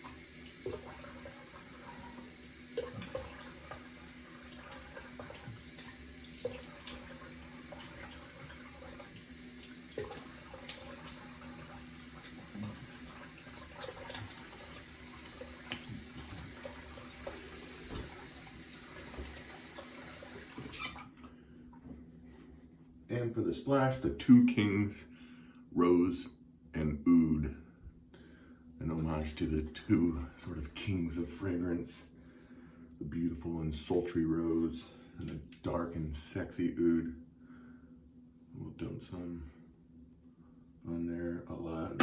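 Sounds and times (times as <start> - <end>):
tap running into sink: 13.2 - 21.0
small splashes and knocks: 13.6 - 19.9.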